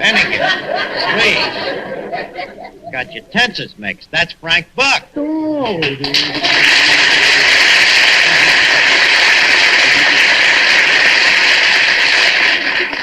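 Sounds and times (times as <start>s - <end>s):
audience applauding: 0.0s - 3.3s, 6.1s - 13.0s.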